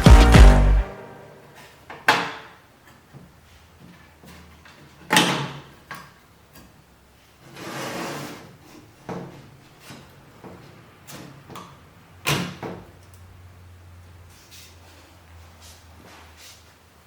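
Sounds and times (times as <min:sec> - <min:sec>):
short sliding scrape: 0:07.5 - 0:08.6.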